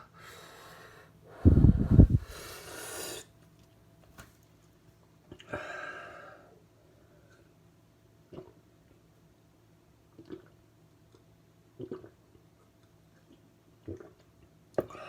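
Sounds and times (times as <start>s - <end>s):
man breathing hard through mouth: 0.2s - 3.3s.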